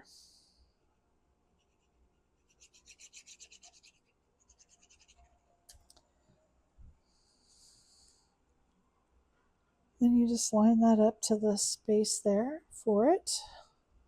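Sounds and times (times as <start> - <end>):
scratchy rubbing of cardstock: 1.6 - 5.2.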